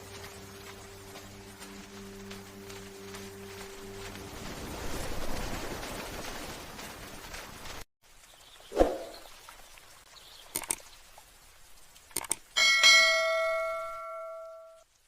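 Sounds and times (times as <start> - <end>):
rain hiss: 0.0 - 15.0
light clicks: 10.5 - 10.9, 12.0 - 12.5
struck metallic ring: 12.6 - 14.8.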